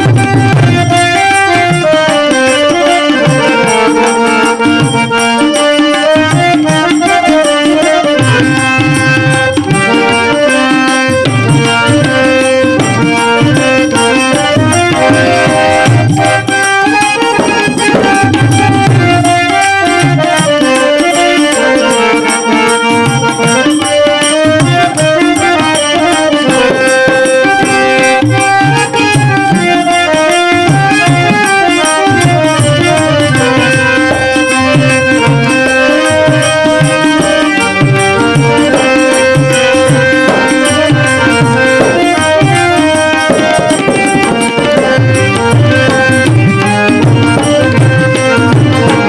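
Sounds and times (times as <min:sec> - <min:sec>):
harmonium playing held notes: 0:00.0 - 0:49.0
tabla rhythm: 0:00.0 - 0:49.0.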